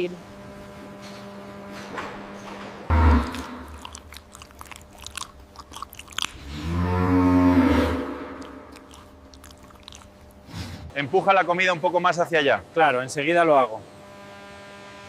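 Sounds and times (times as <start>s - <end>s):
cow mooing: 2.9s - 4.1s, 6.3s - 9.0s
cattle chewing feed: 2.9s - 10.9s.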